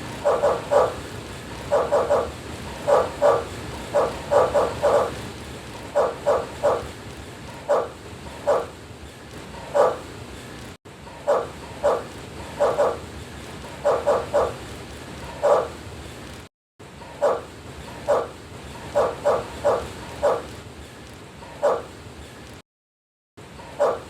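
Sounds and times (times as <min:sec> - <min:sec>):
dog barking: 0:00.1 - 0:05.2, 0:05.8 - 0:06.9, 0:07.6 - 0:08.7, 0:09.6 - 0:10.1, 0:11.2 - 0:13.0, 0:13.8 - 0:14.6, 0:15.3 - 0:15.8, 0:17.1 - 0:20.5, 0:21.5 - 0:21.9, 0:23.6 - 0:24.0.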